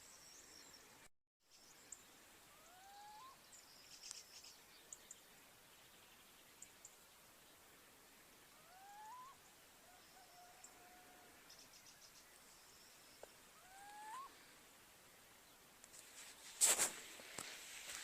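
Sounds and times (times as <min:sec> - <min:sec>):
faint outdoor background: 0:00.0 - 0:18.0
bird whistle calls: 0:08.6 - 0:09.4, 0:13.6 - 0:14.4
loud brief rustling: 0:16.0 - 0:18.0.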